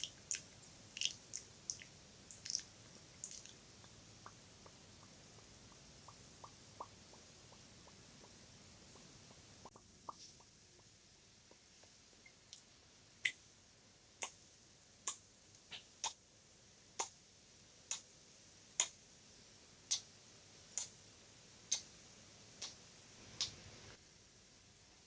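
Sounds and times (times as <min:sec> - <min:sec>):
wet mouth clicks: 0:00.0 - 0:03.6.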